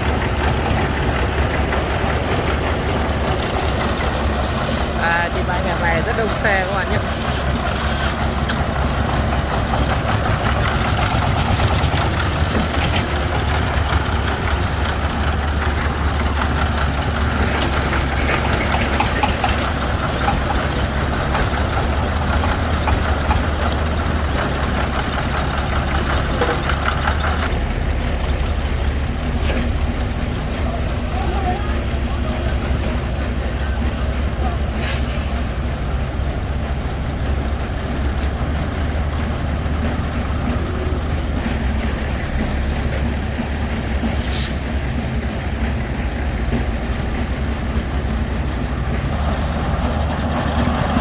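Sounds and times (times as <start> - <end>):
diesel truck engines idling: 0.0 - 51.0.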